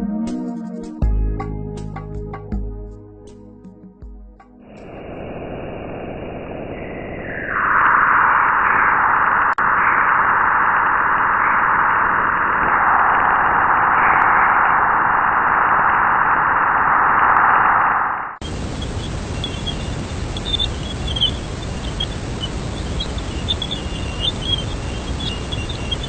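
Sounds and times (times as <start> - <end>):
full rushing noise: 4.6 - 26.0
loud mid-pitched hissing: 18.4 - 26.0.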